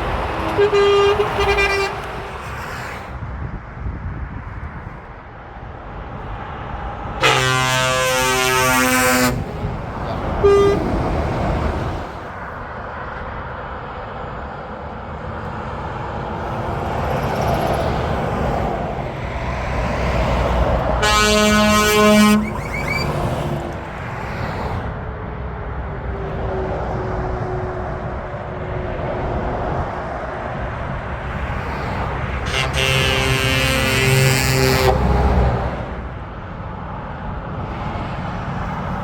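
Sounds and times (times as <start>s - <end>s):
truck air horn: 0.0s - 2.6s, 7.2s - 12.4s, 20.9s - 23.9s, 31.7s - 36.2s
motorway traffic passing: 0.0s - 39.0s.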